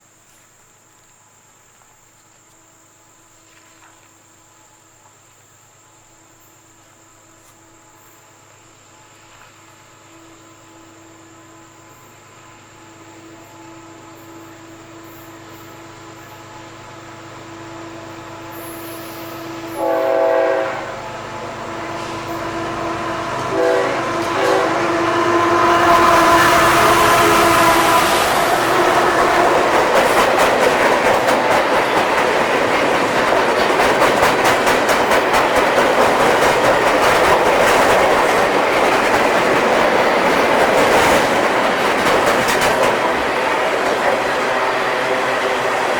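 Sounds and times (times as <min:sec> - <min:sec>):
freight train approaching: 0:04.2 - 0:45.9
locomotive horn blasts: 0:18.6 - 0:29.6.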